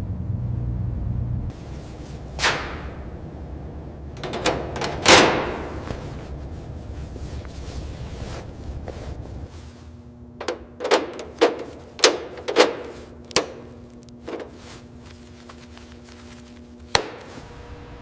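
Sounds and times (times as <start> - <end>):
low rumbling: 0.0 - 12.0
faint steady hum: 0.0 - 18.0.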